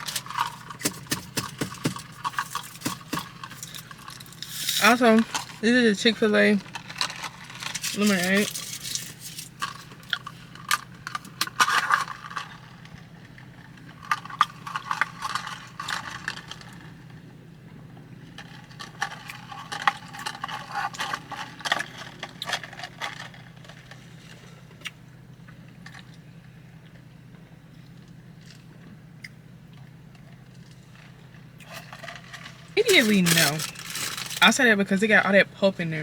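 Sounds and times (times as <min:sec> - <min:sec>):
plastic cup and straw handling: 0:00.0 - 0:13.0, 0:31.6 - 0:34.7
steady low hum: 0:00.0 - 0:36.0.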